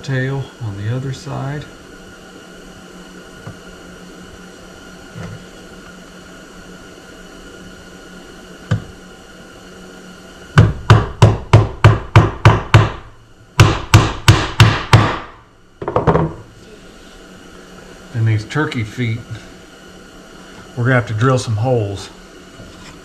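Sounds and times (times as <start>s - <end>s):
hammer striking nail into wood: 10.6s - 16.3s.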